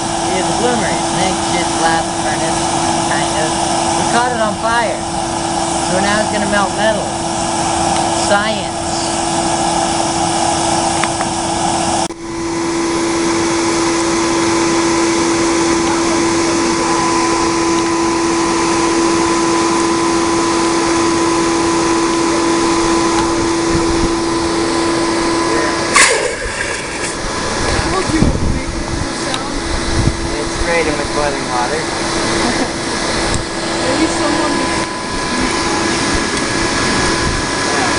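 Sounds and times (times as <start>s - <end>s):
electric air blower whining: 0.0s - 37.9s
sharp knock: 26.0s - 27.2s.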